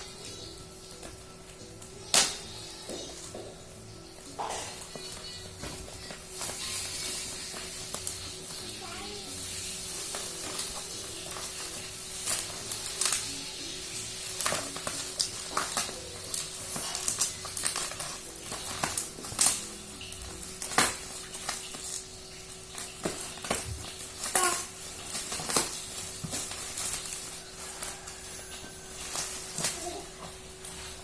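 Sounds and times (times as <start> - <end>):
packaging crinkling and tapping: 9.9 - 13.4, 14.2 - 31.0.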